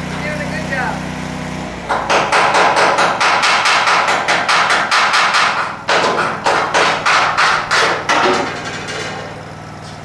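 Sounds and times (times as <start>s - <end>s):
rapid hammer blows: 1.8s - 9.4s.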